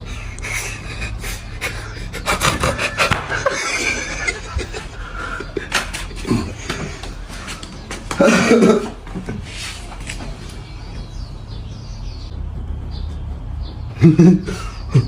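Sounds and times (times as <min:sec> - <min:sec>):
snorts and pants: 0:00.0 - 0:03.3
stifled laughter: 0:00.0 - 0:09.9, 0:14.0 - 0:15.0.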